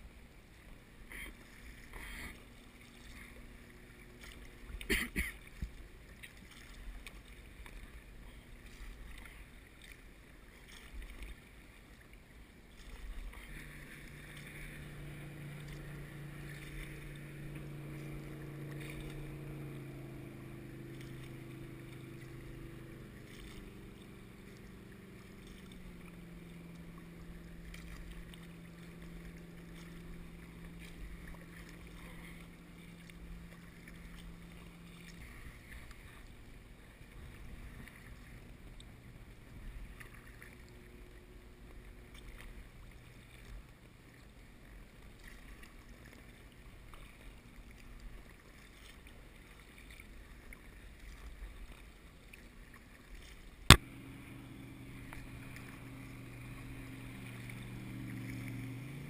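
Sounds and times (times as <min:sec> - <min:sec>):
boat engines humming: 0:00.0 - 0:59.0
wind and water rumble: 0:00.0 - 0:59.0
sharp loud click: 0:53.7 - 0:53.9.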